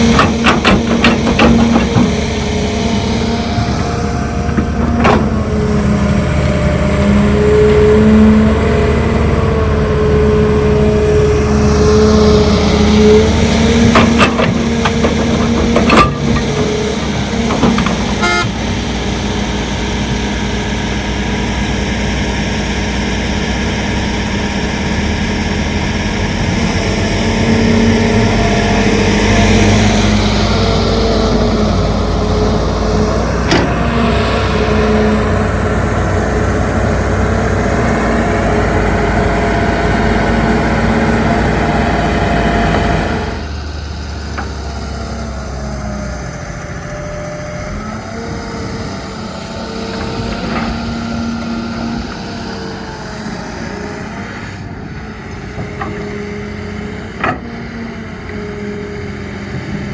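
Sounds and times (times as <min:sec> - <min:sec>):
sharp knocks: 0:00.0 - 0:02.3
diesel engine under load: 0:00.0 - 0:59.9
hydraulic whine: 0:00.0 - 0:59.9.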